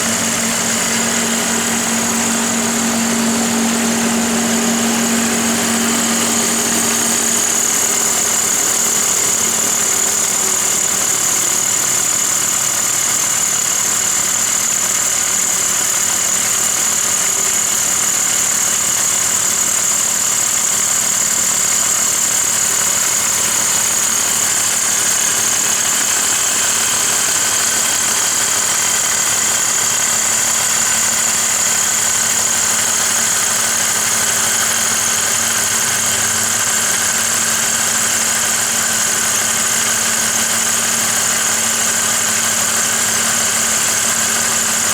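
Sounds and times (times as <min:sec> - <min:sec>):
car engine idling: 0:00.0 - 0:44.9.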